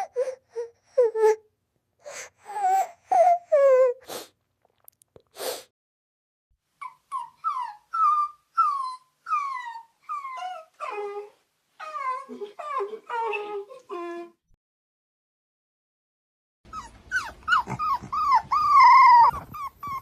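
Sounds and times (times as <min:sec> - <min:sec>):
puppy whining: 0:06.8 - 0:14.5, 0:16.7 - 0:20.0
puppy sniffing: 0:16.7 - 0:20.0.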